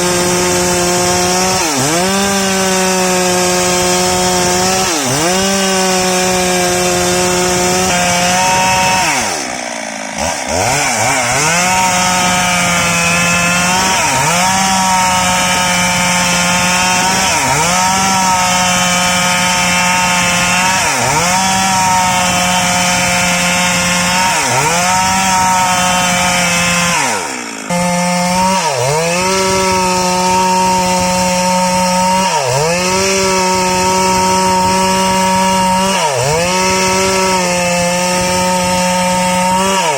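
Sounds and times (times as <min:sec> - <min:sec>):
chainsaw cutting through log: 0:00.0 - 0:39.9.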